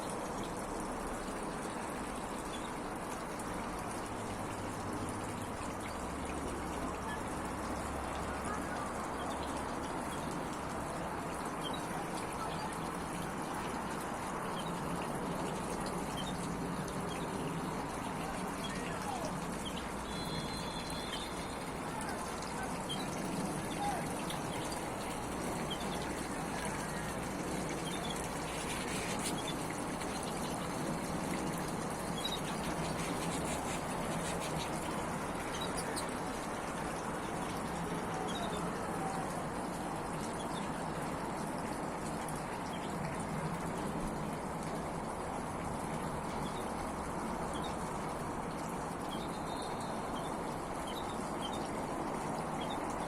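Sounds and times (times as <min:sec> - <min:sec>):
fountain water splashing: 0:00.0 - 0:53.0
birds chirping: 0:16.1 - 0:36.1.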